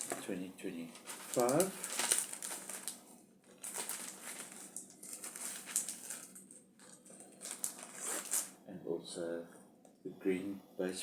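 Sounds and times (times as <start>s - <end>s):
plastic plates crinkling: 0.0s - 0.3s, 0.9s - 8.5s.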